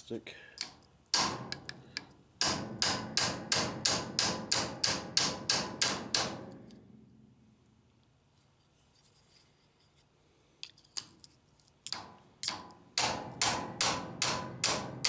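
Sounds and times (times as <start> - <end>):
hammer striking metal punch: 1.2 - 1.7, 2.4 - 6.5, 12.0 - 15.0.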